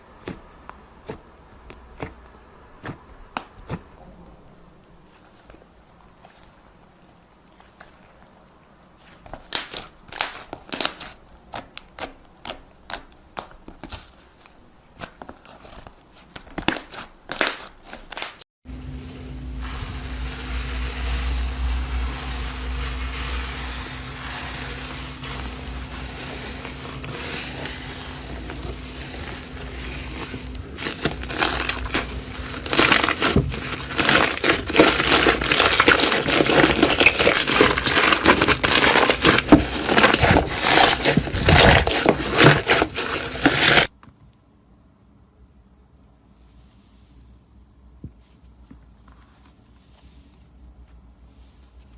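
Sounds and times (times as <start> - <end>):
steady hiss: 18.7 - 32.9
low hum: 18.7 - 37.3
slime crunching and crackling: 19.5 - 43.9.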